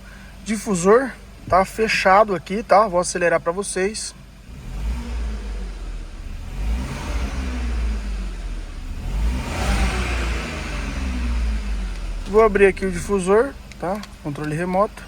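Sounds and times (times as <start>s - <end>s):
car engine revving: 4.4s - 14.5s.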